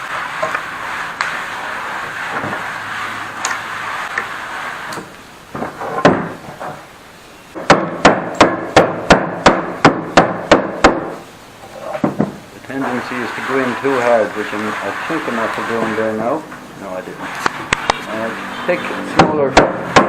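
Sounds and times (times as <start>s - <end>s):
steady rough noise: 0.0s - 20.0s
hammer striking chisel: 19.2s - 20.0s.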